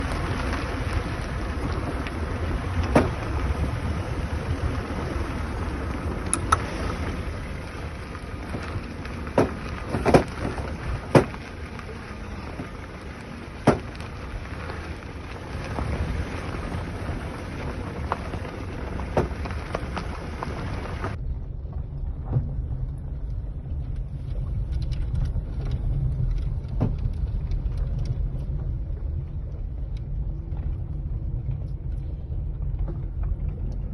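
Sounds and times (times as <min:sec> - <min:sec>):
suspension knocking: 0:00.0 - 0:21.2
low road rumble: 0:00.0 - 0:33.9.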